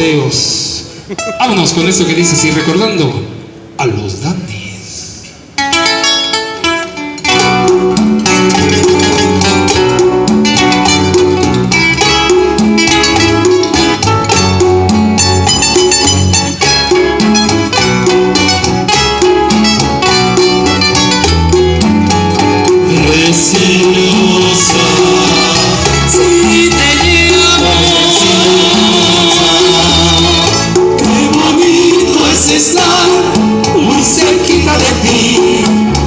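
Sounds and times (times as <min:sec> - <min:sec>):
rhythmic guitar accompaniment: 0:00.0 - 0:03.8, 0:05.2 - 0:36.0
plucked guitar melody: 0:01.1 - 0:03.7, 0:05.3 - 0:36.0
steady bass line: 0:07.2 - 0:36.0.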